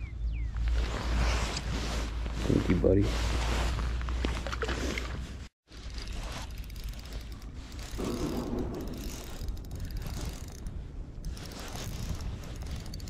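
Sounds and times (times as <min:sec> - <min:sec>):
fishing reel gears ticking: 0:05.8 - 0:13.0.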